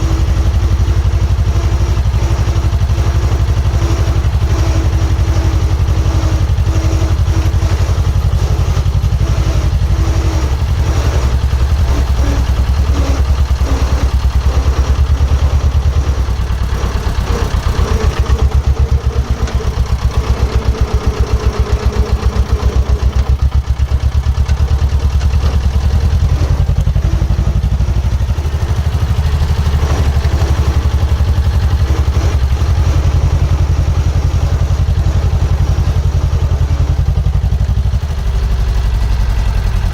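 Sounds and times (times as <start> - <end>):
diesel engine running: 0.0 - 39.9
machine clatter and knocks: 0.1 - 27.4.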